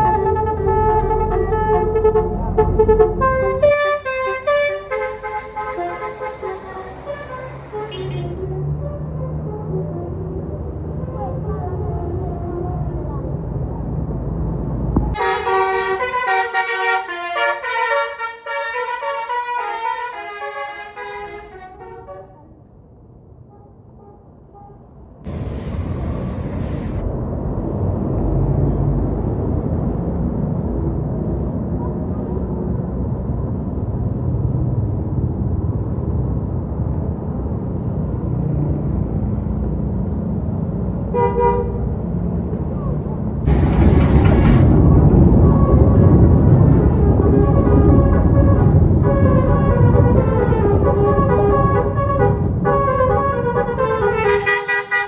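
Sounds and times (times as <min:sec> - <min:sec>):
short horn blast: 0:00.0 - 0:08.6, 0:15.2 - 0:22.4, 0:47.0 - 0:55.0
multi-tone bus horn tune: 0:00.0 - 0:10.4, 0:15.1 - 0:22.6, 0:23.5 - 0:24.9, 0:41.1 - 0:42.1, 0:45.4 - 0:55.0
bus engine rumbling past: 0:00.0 - 0:55.0
air hiss: 0:25.3 - 0:27.0.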